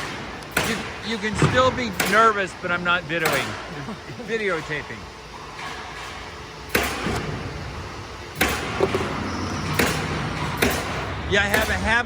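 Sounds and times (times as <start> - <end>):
hammer striking nails: 8.4 - 11.8.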